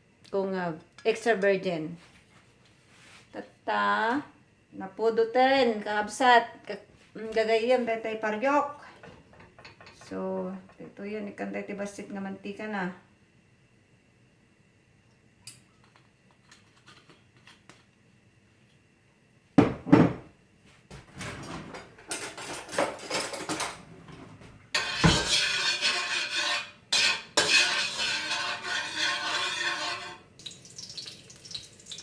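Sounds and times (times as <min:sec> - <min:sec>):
metal cookware clattering: 0:09.0 - 0:10.8, 0:21.2 - 0:32.0.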